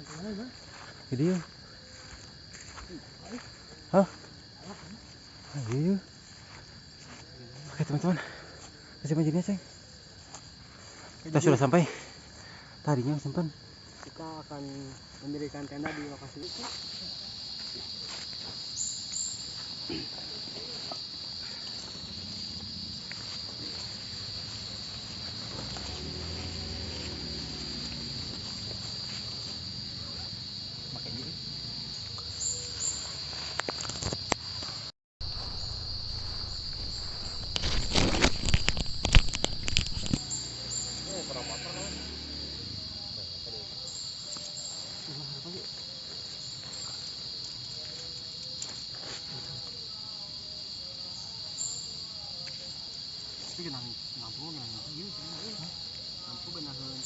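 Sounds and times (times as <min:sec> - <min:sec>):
insects chirping: 0:00.0 - 0:57.0
low rumble: 0:35.2 - 0:40.0.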